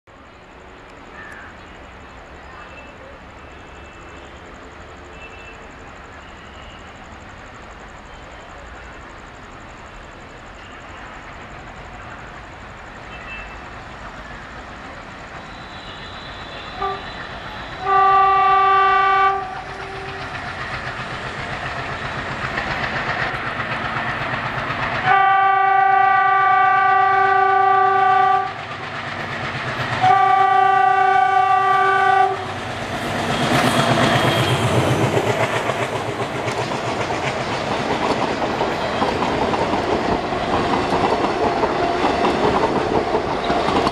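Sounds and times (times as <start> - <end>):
diesel locomotive passing loudly: 0.1 - 43.9
locomotive horn blasts: 15.5 - 20.4, 25.1 - 28.6, 30.0 - 32.5.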